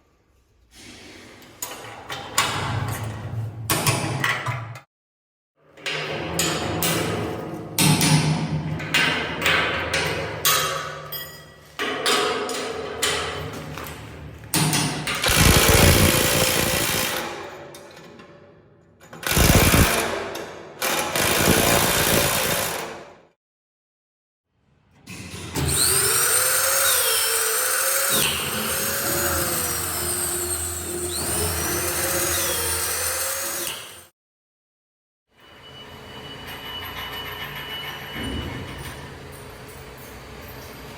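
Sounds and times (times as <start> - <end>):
power tool running: 15.2 - 17.2, 19.2 - 20.1, 20.8 - 22.8, 25.8 - 34.1.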